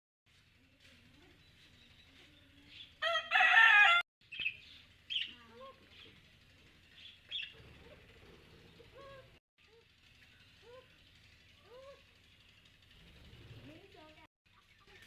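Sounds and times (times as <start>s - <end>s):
bird crowing: 3.0s - 4.0s
bird chirping: 4.2s - 6.2s, 6.9s - 9.3s.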